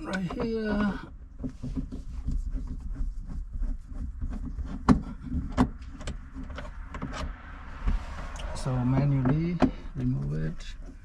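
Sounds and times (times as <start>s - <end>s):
low hum: 2.2s - 11.0s.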